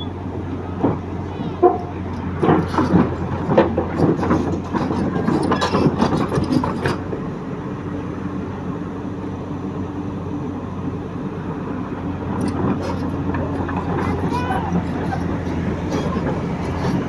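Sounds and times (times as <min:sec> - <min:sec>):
excavator diesel engine drone: 0:00.0 - 0:17.0.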